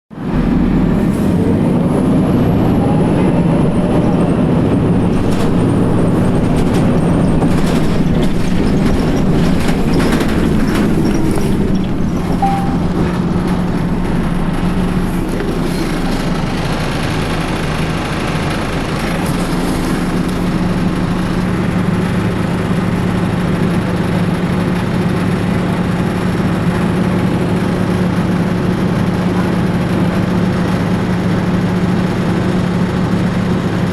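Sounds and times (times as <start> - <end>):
bus engine droning: 0.1 - 33.9
clicks and rattles: 5.1 - 13.8.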